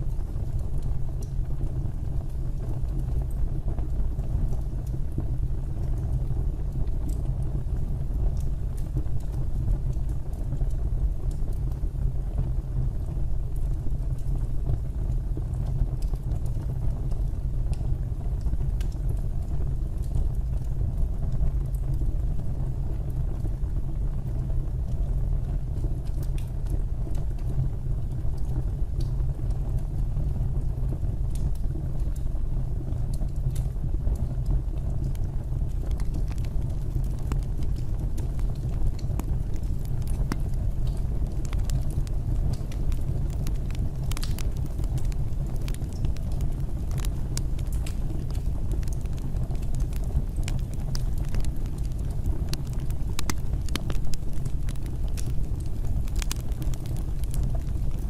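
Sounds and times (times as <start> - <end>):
fire crackles: 0.0 - 58.0
low rumble of flames: 0.0 - 58.0.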